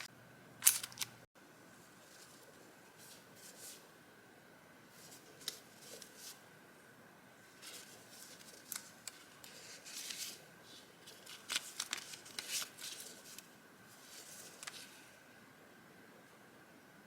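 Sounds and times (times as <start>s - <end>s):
paper rustling and crinkling: 4.9s - 6.4s, 7.5s - 15.1s.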